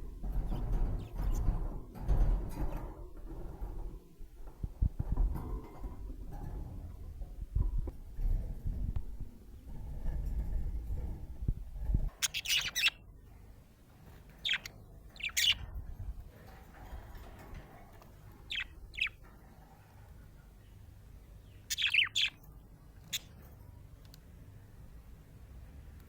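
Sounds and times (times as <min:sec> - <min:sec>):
budgerigar chirping: 0:12.2 - 0:13.0, 0:14.4 - 0:15.6, 0:18.5 - 0:19.2, 0:21.6 - 0:22.4.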